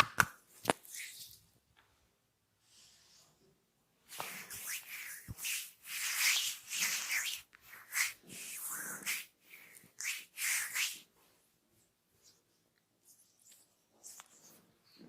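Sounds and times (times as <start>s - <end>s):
hands rubbing oiled skin: 0.0s - 1.5s, 4.1s - 11.2s.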